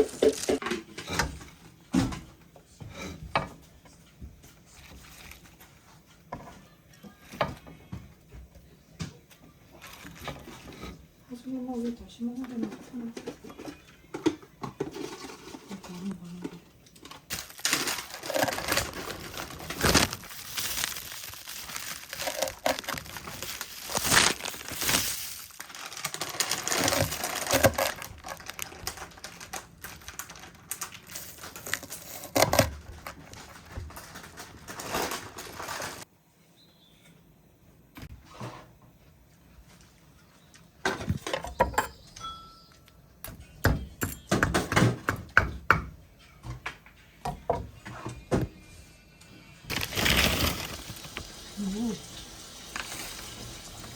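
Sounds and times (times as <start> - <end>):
crinkling and rustling: 0.0 - 2.5, 3.9 - 8.0, 9.0 - 36.1, 49.7 - 52.0.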